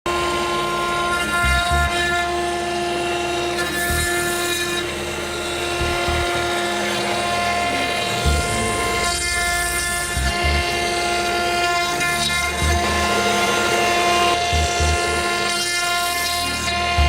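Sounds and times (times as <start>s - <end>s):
engraving machine whining: 0.1s - 17.0s
short low thumps: 8.2s - 10.9s, 14.4s - 15.2s.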